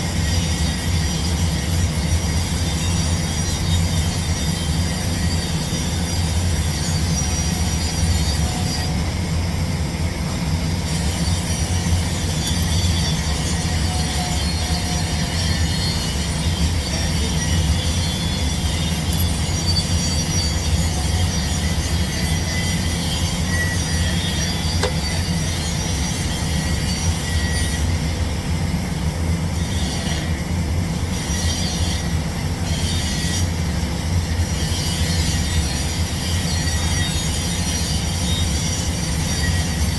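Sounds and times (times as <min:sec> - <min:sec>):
low mechanical rumble: 0:07.2 - 0:26.8.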